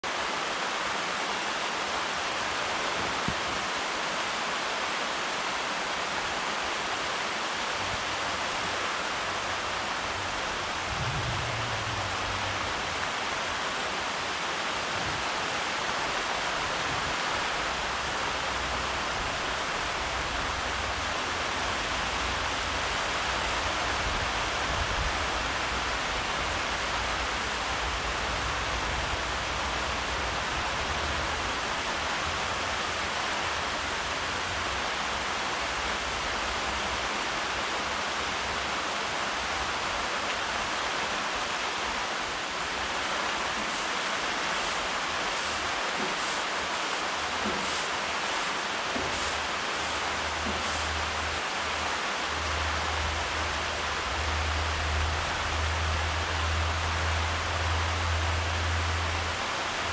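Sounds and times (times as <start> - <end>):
steady rainfall: 0.0 - 59.9
faint low rumble: 10.4 - 13.2.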